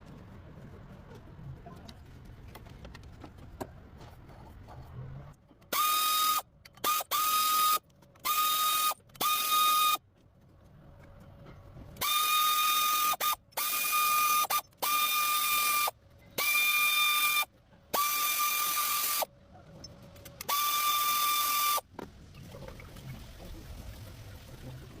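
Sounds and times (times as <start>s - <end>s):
power tool whining: 12.0s - 19.3s, 20.4s - 21.8s.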